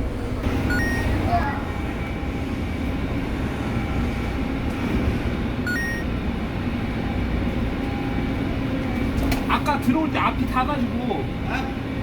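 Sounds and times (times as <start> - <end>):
bus diesel engine rumbling: 0.0 - 12.0
two-note electronic beep: 0.7 - 1.2.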